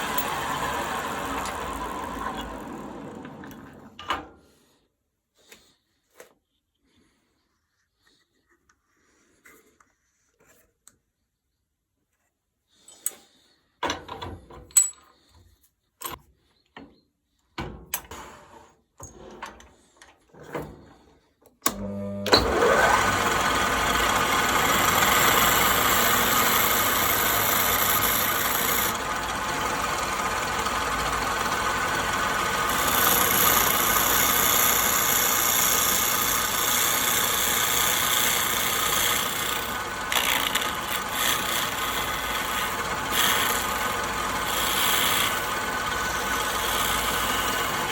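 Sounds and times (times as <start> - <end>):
electric power tool whining: 0.0 - 4.0, 21.7 - 47.9.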